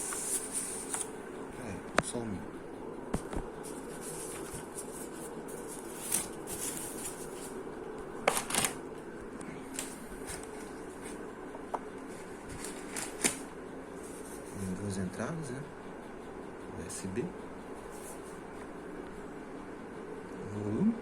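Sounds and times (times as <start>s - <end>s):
packaging rustling: 3.2s - 8.8s, 9.7s - 11.2s, 12.1s - 13.5s.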